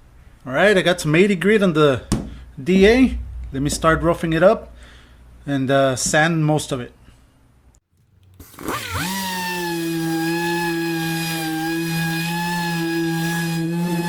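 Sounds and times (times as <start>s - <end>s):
sander whining: 8.4s - 14.0s.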